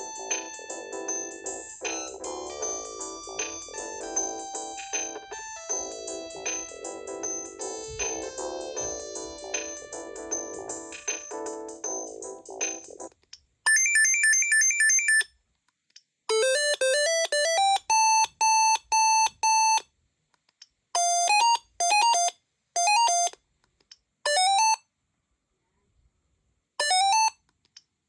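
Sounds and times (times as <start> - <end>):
cordless phone ringtone beeps: 13.7 - 15.3, 16.3 - 19.8, 21.0 - 23.4, 24.3 - 24.8, 26.8 - 27.4.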